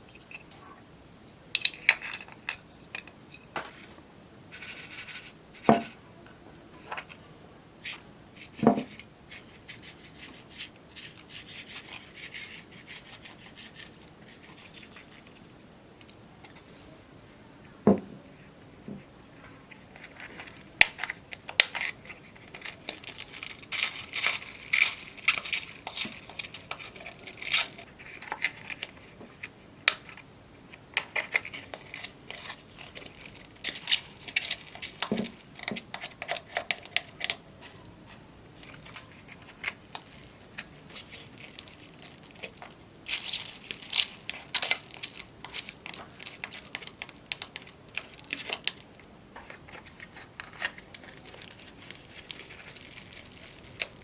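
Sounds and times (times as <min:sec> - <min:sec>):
wet crackling of slime: 0:50.7 - 0:54.0.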